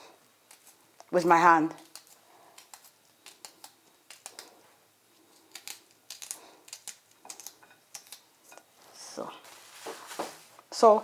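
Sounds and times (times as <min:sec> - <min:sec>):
knife slicing garlic: 0:00.0 - 0:04.6, 0:05.3 - 0:08.7.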